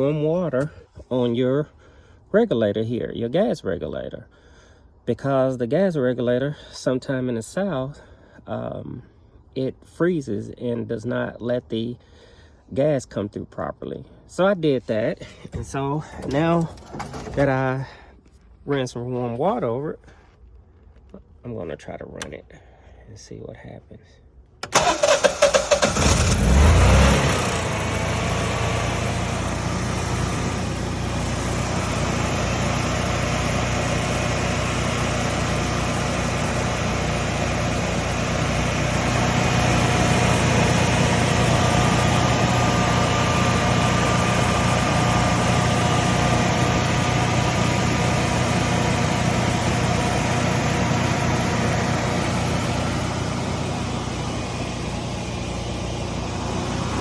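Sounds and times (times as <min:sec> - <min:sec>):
generator engine running: 0:15.5 - 0:17.8, 0:24.6 - 0:57.0.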